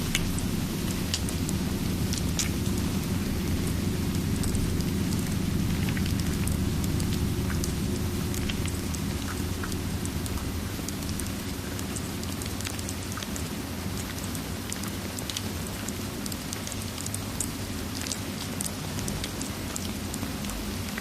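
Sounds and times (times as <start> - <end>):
low even rumble: 0.0 - 14.3
small crackles and ticks: 0.0 - 21.0
steady rain: 0.0 - 21.0.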